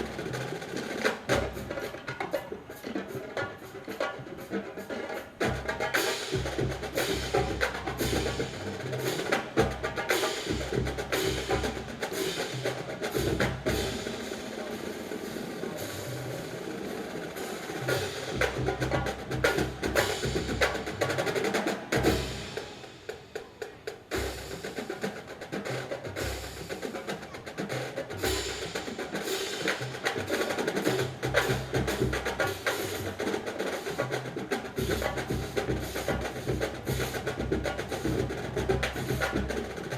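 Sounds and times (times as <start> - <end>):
drum line playing a cadence: 0.0 - 39.9.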